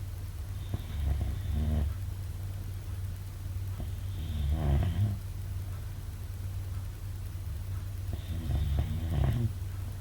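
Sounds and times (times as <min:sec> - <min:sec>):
steady low hum: 0:00.0 - 0:10.0
person snoring: 0:03.8 - 0:05.2, 0:08.1 - 0:09.5.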